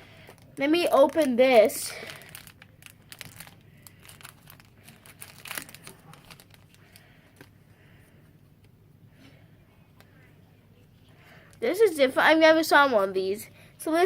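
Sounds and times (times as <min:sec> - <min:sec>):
packaging crinkling and tearing: 0:00.2 - 0:07.6.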